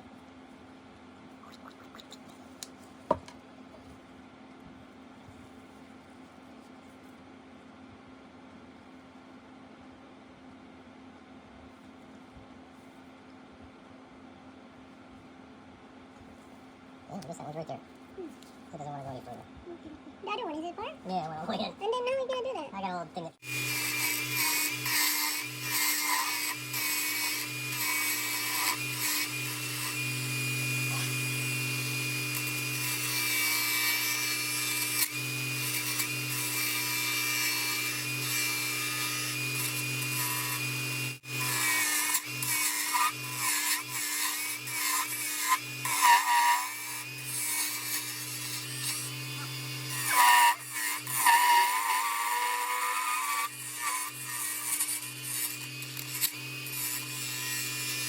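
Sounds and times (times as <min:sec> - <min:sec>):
power tool motor hum: 0:23.4 - 0:58.0
tool scraping wood: 0:23.4 - 0:58.0.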